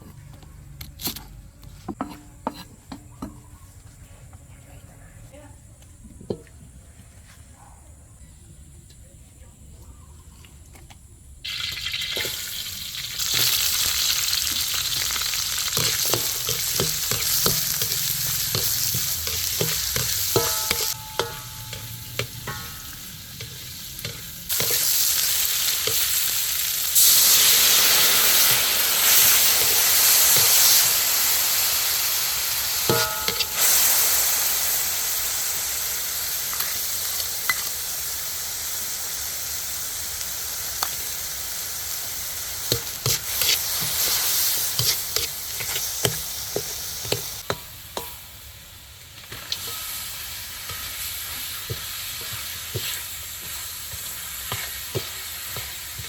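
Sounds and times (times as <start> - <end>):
food sizzling in a pan: 11.4 - 56.0
utensil stirring in a pan: 11.7 - 34.3, 42.6 - 48.3, 49.2 - 56.0.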